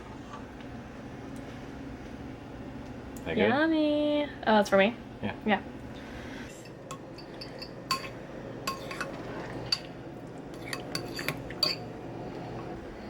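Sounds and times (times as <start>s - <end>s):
metal utensils clinking on dishes: 6.9s - 9.9s, 10.5s - 11.9s.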